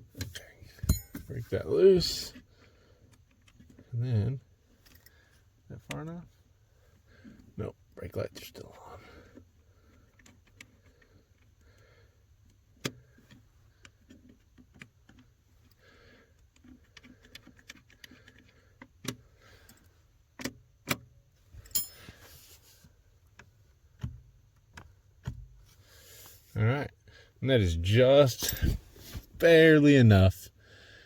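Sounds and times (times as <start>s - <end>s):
wrench clicks and metallic taps: 0.2s - 1.3s, 20.4s - 22.2s
heavy breathing: 15.7s - 16.4s, 30.5s - 31.0s.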